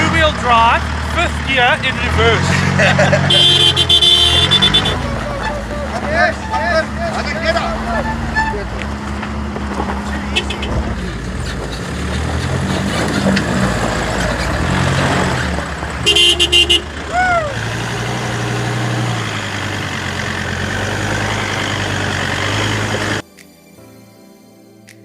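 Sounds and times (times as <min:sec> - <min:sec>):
off-road vehicle engine under load: 0:00.0 - 0:23.2
vehicle horn toots: 0:03.2 - 0:08.8, 0:10.2 - 0:11.0, 0:16.0 - 0:17.0
falling whoop: 0:17.1 - 0:17.7.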